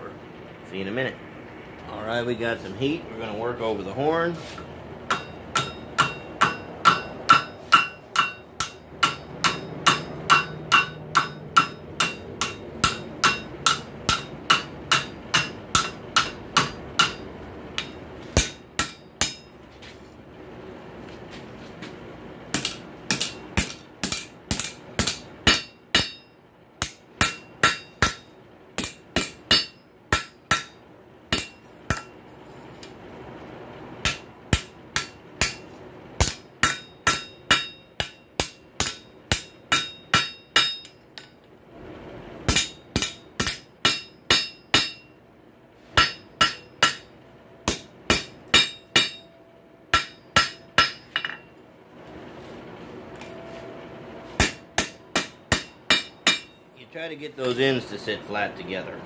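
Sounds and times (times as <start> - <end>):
hammer striking hot steel: 5.0 - 19.6, 22.5 - 32.2, 34.0 - 41.4, 42.5 - 45.2, 46.0 - 51.5, 54.4 - 56.8
anvil ringing: 5.1 - 19.6, 22.6 - 32.2, 36.2 - 41.4, 42.5 - 45.2, 46.0 - 47.1, 47.7 - 51.5, 54.4 - 56.8.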